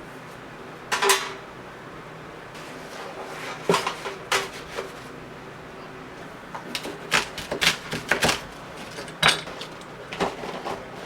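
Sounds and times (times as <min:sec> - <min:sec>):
kitchenware clattering: 0:08.2 - 0:10.8
kitchenware clinking: 0:08.8 - 0:10.4.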